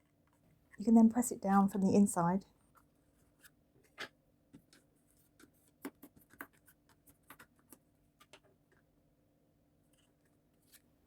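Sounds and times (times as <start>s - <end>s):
fingers tapping and rubbing card: 4.6s - 8.4s.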